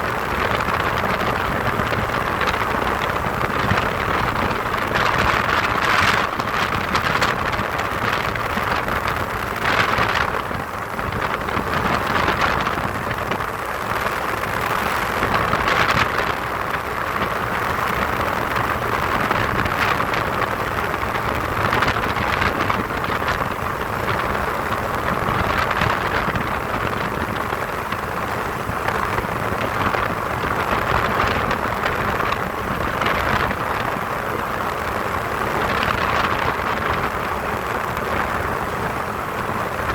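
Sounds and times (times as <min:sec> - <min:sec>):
aircraft engine: 0:00.0 - 0:39.9
wind on microphone: 0:00.0 - 0:39.9.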